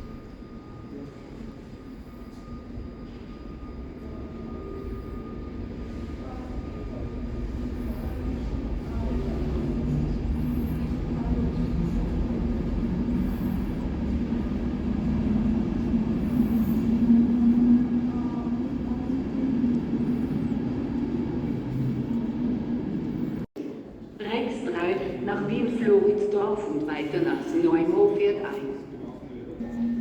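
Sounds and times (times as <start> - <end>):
electric train rumbling past: 0.0 - 23.5
low hum: 2.0 - 23.5.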